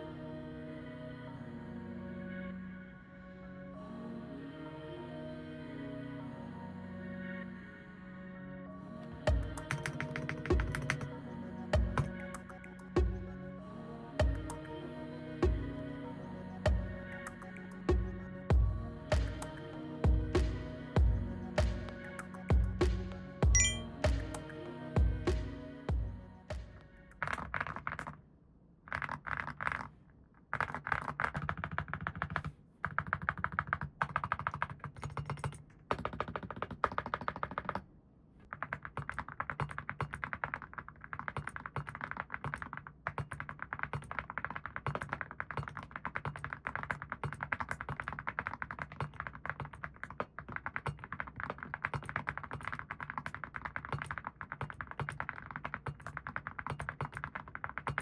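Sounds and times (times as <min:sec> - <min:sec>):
typing on mechanical keyboard: 0:30.6 - 0:37.8, 0:38.5 - 0:58.0.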